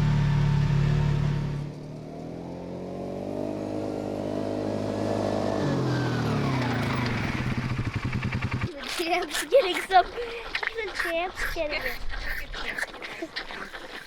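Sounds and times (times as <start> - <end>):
vehicle engine revving: 0.0 - 8.8.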